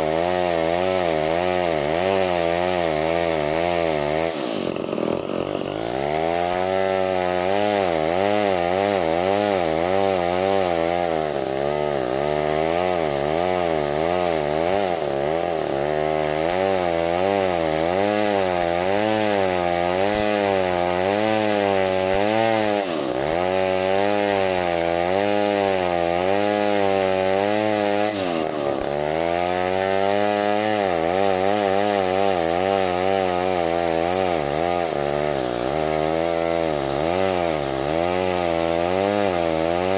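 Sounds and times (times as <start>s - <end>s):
chainsaw cutting timber: 0.0s - 39.9s.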